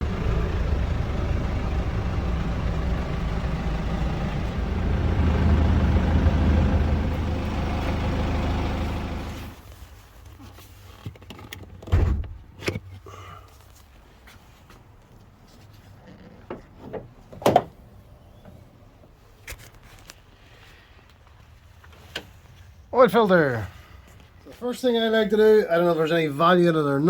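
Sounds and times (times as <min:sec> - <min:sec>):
diesel engine running: 0:00.0 - 0:09.8
loud thump: 0:11.9 - 0:12.4.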